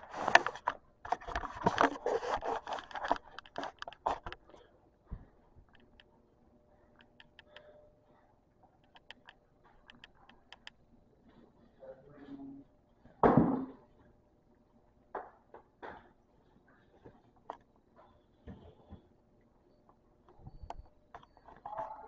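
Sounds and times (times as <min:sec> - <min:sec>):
light clicks and taps: 0:08.8 - 0:10.8.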